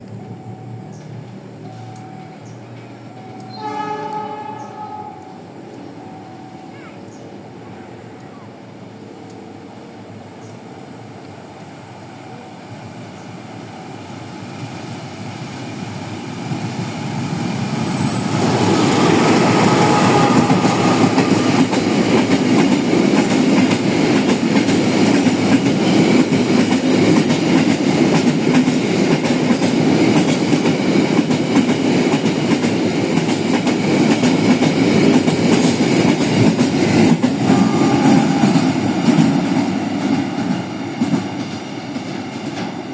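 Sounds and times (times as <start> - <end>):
diesel locomotive passing: 0.0 - 42.9
train wheels clacking on rail joints: 17.6 - 42.9.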